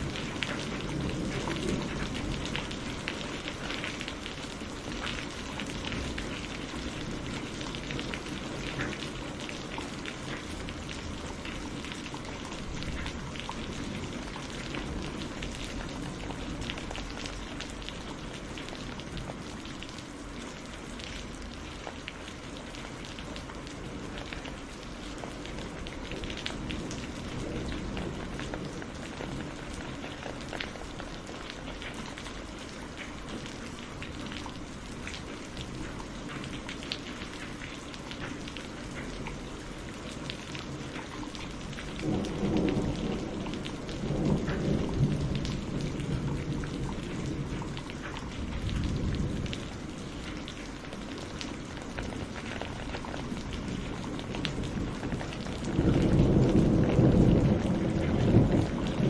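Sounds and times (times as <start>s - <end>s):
steady rain falling: 0.0s - 59.0s.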